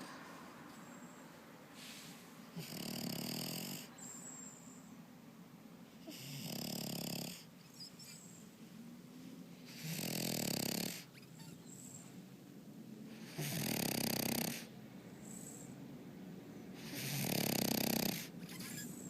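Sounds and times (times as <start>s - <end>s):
dog snoring: 2.5s - 3.9s, 6.0s - 8.2s, 9.7s - 11.6s, 13.1s - 14.7s, 16.8s - 19.0s
dog breathing: 16.7s - 19.0s.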